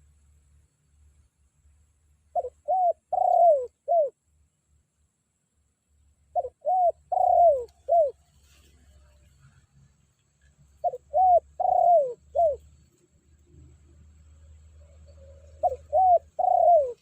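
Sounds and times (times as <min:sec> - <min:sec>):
dove cooing: 0:02.3 - 0:04.1, 0:06.4 - 0:08.2, 0:10.8 - 0:12.6, 0:15.2 - 0:17.0.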